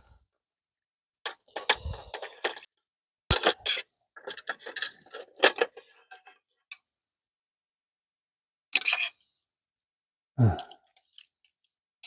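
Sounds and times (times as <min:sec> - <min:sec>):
tableware clicking and clattering: 0:03.3 - 0:06.3.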